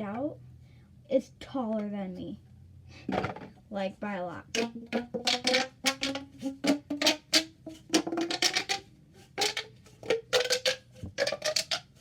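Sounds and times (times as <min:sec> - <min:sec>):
plastic pop tubes snapping: 0:04.5 - 0:12.0.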